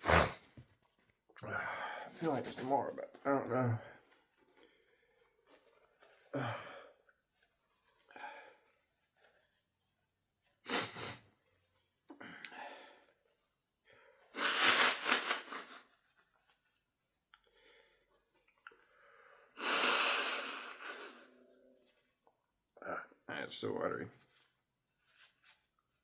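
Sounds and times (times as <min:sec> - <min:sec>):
sharp breaths through nose: 0:14.1 - 0:15.9, 0:18.8 - 0:21.5.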